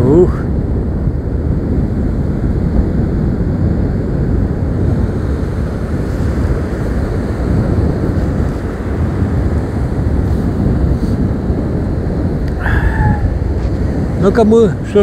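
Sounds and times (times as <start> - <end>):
heavy sea surf breaking: 0.0 - 15.0
wind buffeting microphone: 0.0 - 15.0.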